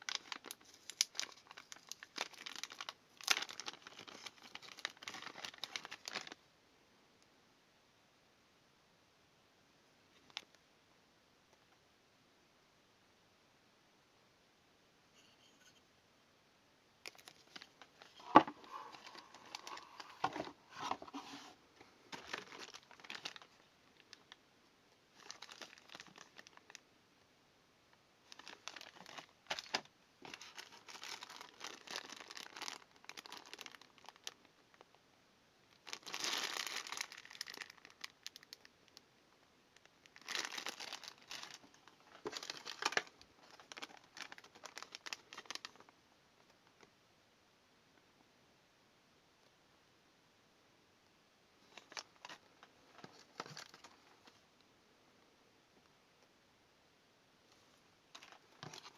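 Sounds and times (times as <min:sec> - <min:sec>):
plastic and paper crinkling: 0:00.0 - 0:06.4, 0:17.0 - 0:24.4, 0:25.1 - 0:26.8, 0:28.2 - 0:34.9, 0:35.7 - 0:38.7, 0:40.0 - 0:45.9, 0:51.6 - 0:54.4, 0:57.5 - 0:58.9.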